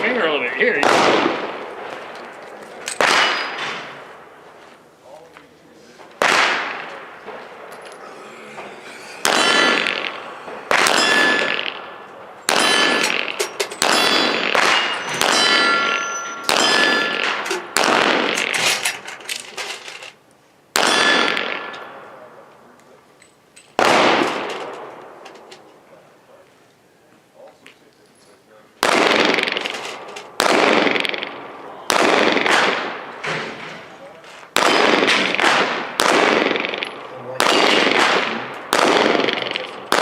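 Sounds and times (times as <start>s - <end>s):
handgun shots echoing: 0.8s - 2.3s, 2.9s - 4.0s, 6.2s - 8.0s, 8.6s - 18.8s, 20.8s - 22.0s, 23.7s - 25.2s, 28.8s - 33.2s, 34.6s - 40.0s
steel plate ringing: 8.0s - 17.8s.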